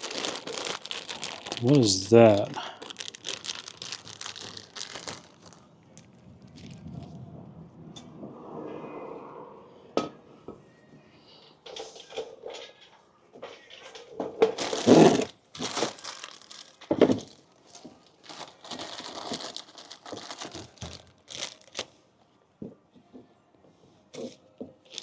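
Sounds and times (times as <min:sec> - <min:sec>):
packaging crinkled and torn open: 0:00.0 - 0:07.2, 0:14.4 - 0:22.0.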